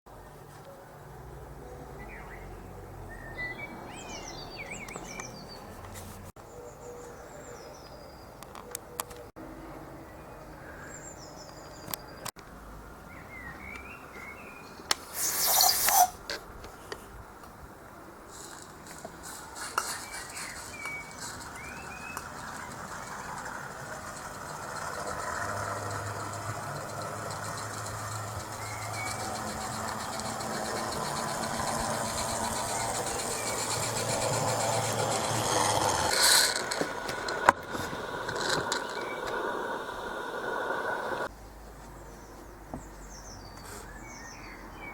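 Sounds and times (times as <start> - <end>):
birds chirping: 1.7 - 5.8, 19.8 - 41.3
model train running on track: 21.0 - 41.3.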